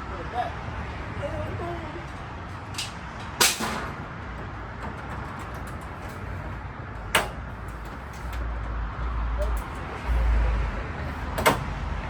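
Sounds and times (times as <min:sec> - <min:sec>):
sharp metal knocks: 0:02.8 - 0:08.4, 0:11.4 - 0:11.7.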